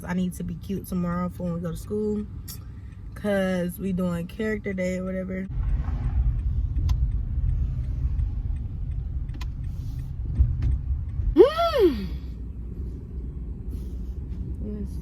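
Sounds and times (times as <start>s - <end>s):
car interior rumble: 0.0s - 15.0s
short voiced ooh: 11.4s - 12.2s.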